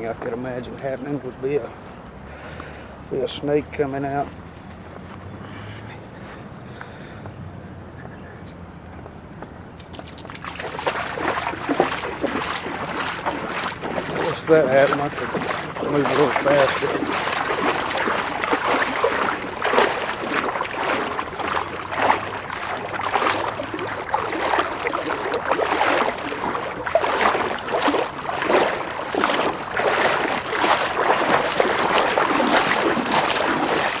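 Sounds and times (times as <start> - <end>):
wading through water sloshing: 0.0 - 7.6, 9.7 - 34.0.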